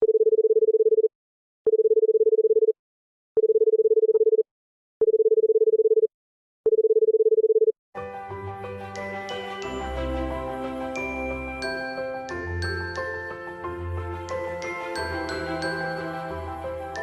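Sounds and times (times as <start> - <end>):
electronic telephone tone beeping: 1.7 - 2.7, 3.4 - 4.4, 5.0 - 6.1, 6.7 - 7.7
chiming music jingle: 8.3 - 17.0.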